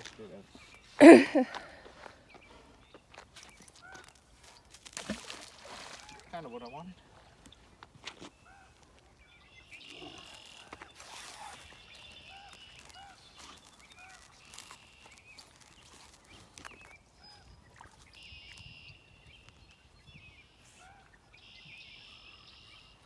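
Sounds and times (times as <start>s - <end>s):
blackbirds singing buzzy trills: 8.3s - 23.0s.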